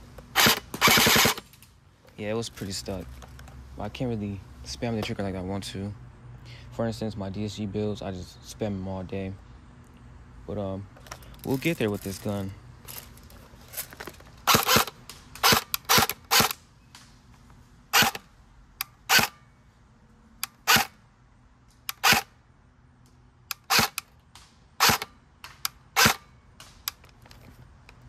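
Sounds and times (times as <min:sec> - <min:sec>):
airsoft gun shots: 0:00.4 - 0:01.4, 0:14.5 - 0:16.6, 0:24.8 - 0:26.8.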